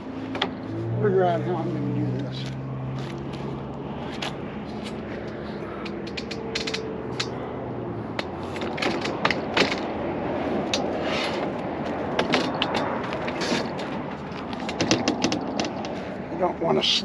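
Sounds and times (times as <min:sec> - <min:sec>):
steady background noise: 0:00.0 - 0:17.0
hands handling hardware: 0:04.1 - 0:07.4.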